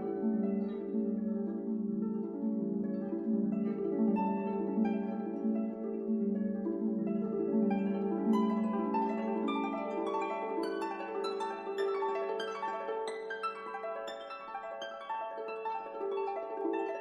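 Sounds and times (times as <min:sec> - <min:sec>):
plucked harp-like music: 0:00.0 - 0:17.0.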